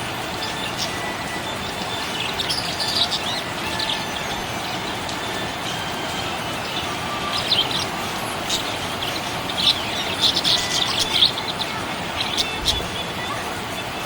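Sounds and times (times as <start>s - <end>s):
steady background hiss: 0.0s - 14.0s
budgerigar chirping: 6.6s - 13.0s.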